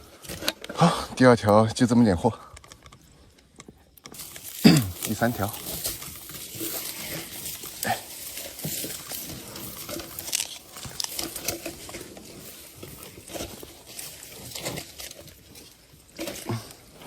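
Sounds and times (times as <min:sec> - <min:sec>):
knocks and rustles of fishing net: 0:04.0 - 0:17.0.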